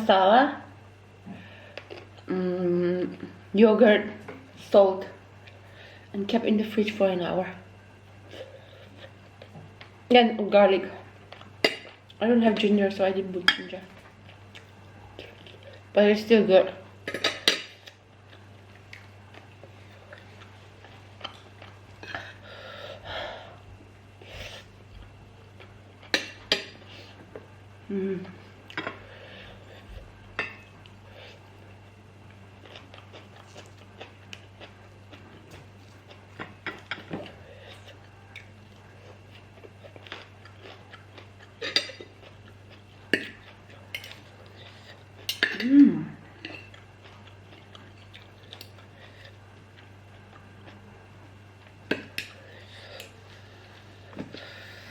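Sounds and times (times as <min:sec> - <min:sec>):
steady low hum: 0:00.0 - 0:54.9
breathing: 0:01.2 - 0:01.9, 0:05.6 - 0:06.1, 0:22.4 - 0:23.6, 0:29.0 - 0:29.9, 0:52.4 - 0:54.9
person chewing: 0:32.6 - 0:45.5, 0:46.4 - 0:50.8.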